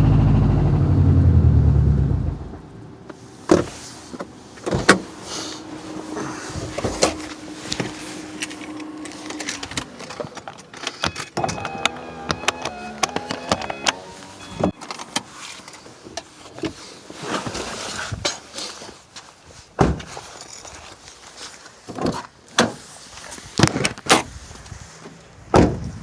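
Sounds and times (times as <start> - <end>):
car engine running and shutting off: 0.0 - 15.0.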